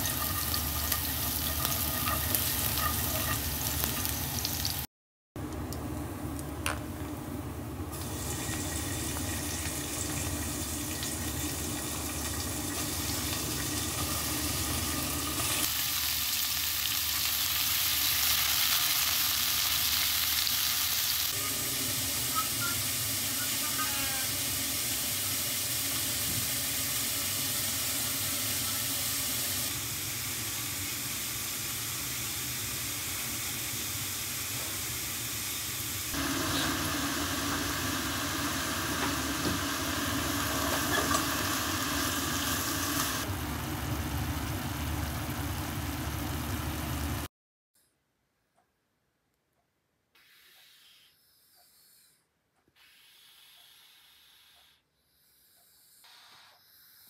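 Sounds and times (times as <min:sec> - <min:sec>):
food sizzling in a pan: 0:00.0 - 0:04.9, 0:08.0 - 0:43.3.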